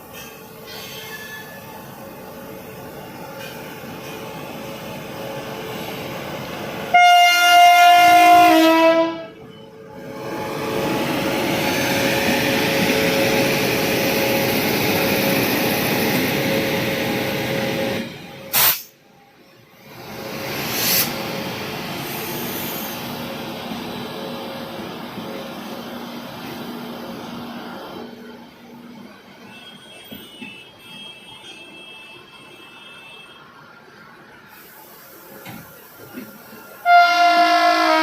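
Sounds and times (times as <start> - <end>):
train rumbling: 0.0 - 31.7, 34.0 - 38.0
train air horn blast: 6.9 - 9.4, 36.8 - 38.0.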